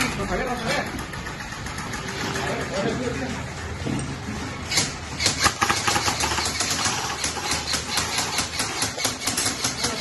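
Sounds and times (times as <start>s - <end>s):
airsoft guns firing: 4.7s - 10.0s.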